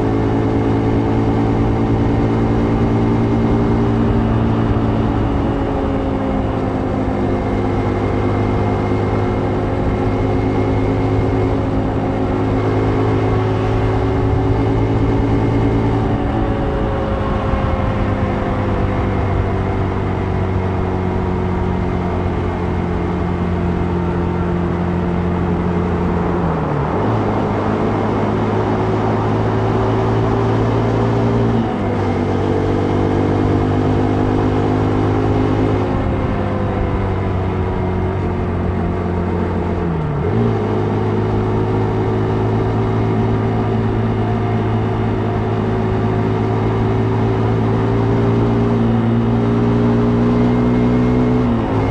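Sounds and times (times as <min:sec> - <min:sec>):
motorcycle engine running: 0:00.0 - 0:51.9
wind rush on microphone: 0:13.4 - 0:29.7.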